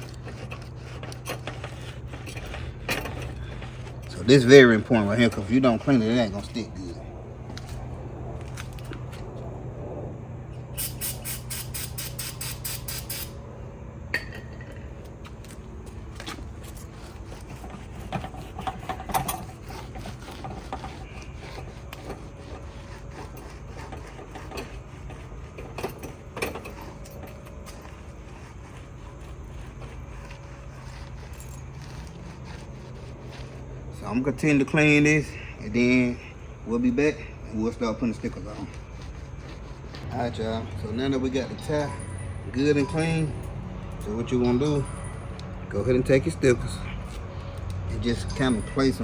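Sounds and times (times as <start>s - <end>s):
rag squeaking on tire rubber: 0.0s - 7.1s, 10.6s - 13.4s, 15.1s - 43.3s
steady low hum: 0.0s - 49.0s.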